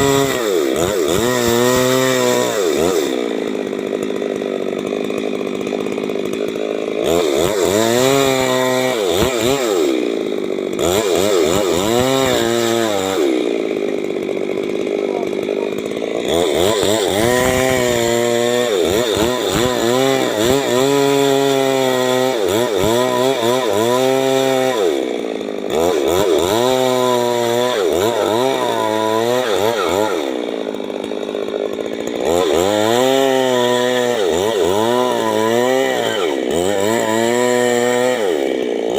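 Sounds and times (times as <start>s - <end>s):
chainsaw cutting: 0.0s - 38.9s.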